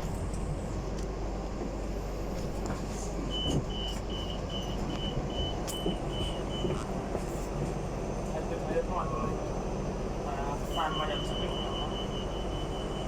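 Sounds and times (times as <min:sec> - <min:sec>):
train rumbling: 0:00.0 - 0:13.0.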